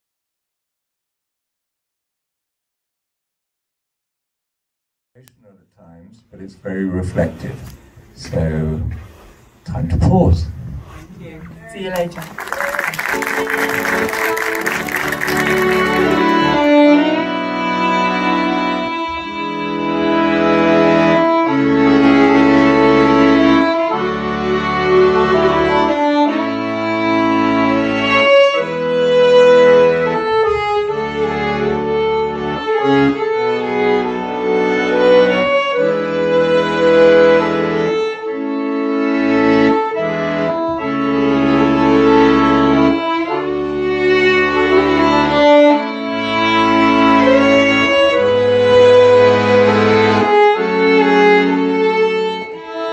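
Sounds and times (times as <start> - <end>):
people clapping: 11.7 - 16.8
slow instrumental music: 12.5 - 52.9
bowed strings playing chords: 13.0 - 52.9.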